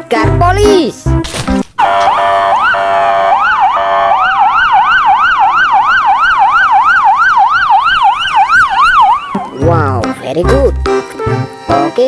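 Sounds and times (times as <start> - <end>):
toy police car siren: 1.8 - 9.4.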